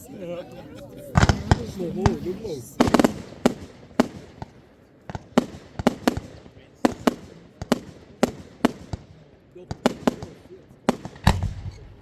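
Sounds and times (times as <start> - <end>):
firework bangs with echo: 1.2 - 12.0.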